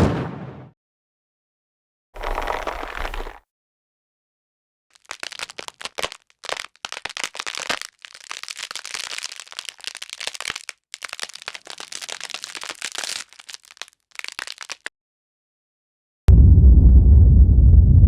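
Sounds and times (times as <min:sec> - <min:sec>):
dense crackling clicks: 0:05.0 - 0:14.9.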